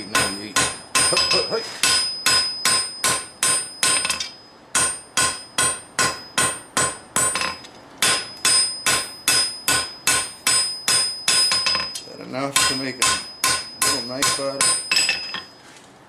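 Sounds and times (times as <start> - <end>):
hammer ringing on anvil: 0.0 - 15.5.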